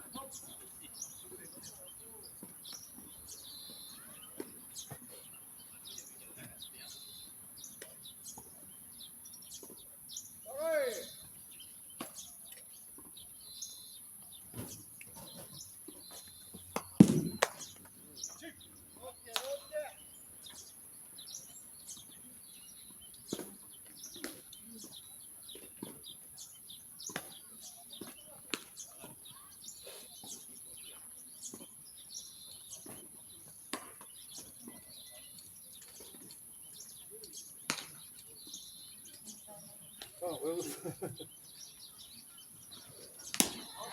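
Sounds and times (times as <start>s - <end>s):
loud thump: 17.0s - 17.6s.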